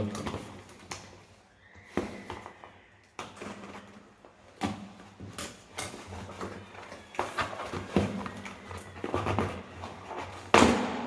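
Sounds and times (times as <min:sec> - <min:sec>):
packaging handling noise: 0:00.0 - 0:10.6.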